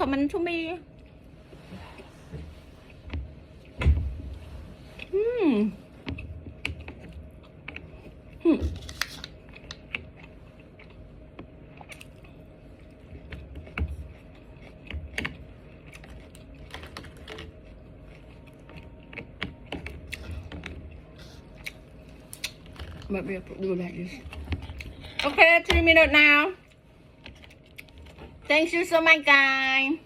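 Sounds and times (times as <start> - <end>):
utensils and packaging clicking: 8.7 - 10.0.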